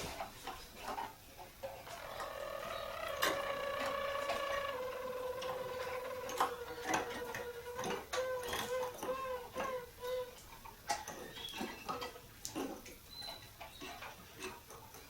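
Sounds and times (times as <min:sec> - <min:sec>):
canary singing: 0:01.6 - 0:10.5, 0:11.1 - 0:12.1, 0:13.1 - 0:14.1.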